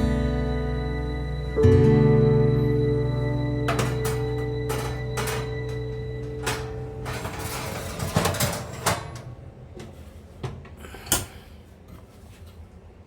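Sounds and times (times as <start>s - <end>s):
background music: 0.0s - 8.4s
knocks and clicks of handling: 3.7s - 11.4s.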